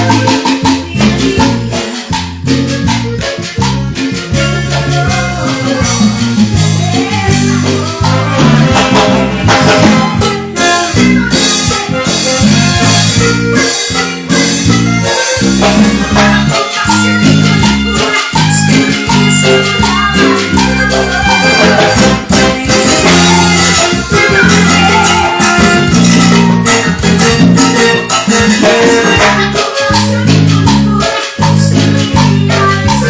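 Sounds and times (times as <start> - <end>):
shakers: 0.0 - 9.3
bass: 0.0 - 33.0
drums: 0.0 - 33.0
live band playing latin dance tune: 0.0 - 33.0.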